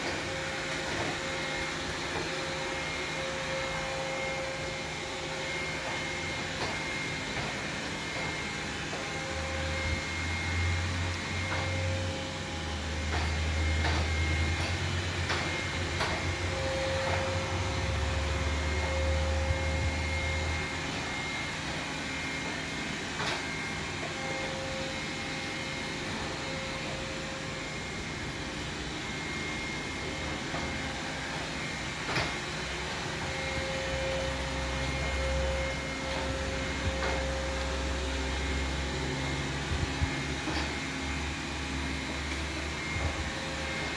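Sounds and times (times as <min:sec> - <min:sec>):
robot vacuum whirring: 0:00.0 - 0:43.9.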